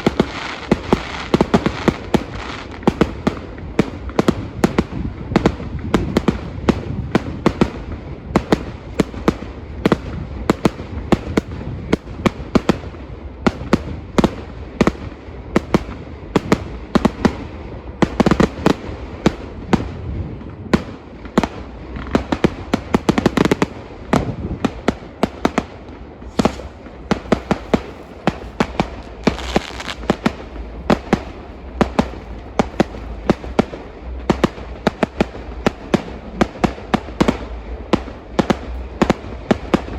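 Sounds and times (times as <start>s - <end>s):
fireworks bangs: 0.0s - 39.9s.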